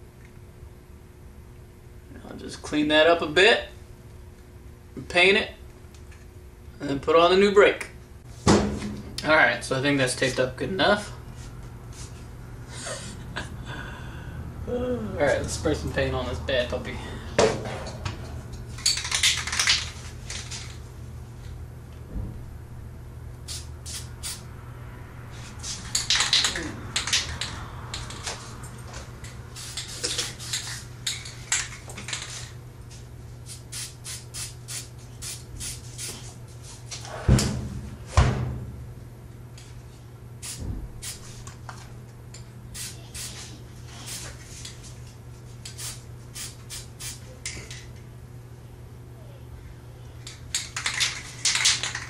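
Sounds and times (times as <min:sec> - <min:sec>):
spray can rattling: 0:18.8 - 0:20.8, 0:23.5 - 0:24.4, 0:25.9 - 0:28.2, 0:29.6 - 0:32.5, 0:33.5 - 0:36.1, 0:45.7 - 0:47.2, 0:50.5 - 0:52.0
spray paint hissing: 0:23.4 - 0:24.5, 0:29.5 - 0:30.8, 0:33.4 - 0:36.3, 0:40.4 - 0:41.3, 0:42.7 - 0:44.4, 0:45.6 - 0:47.3.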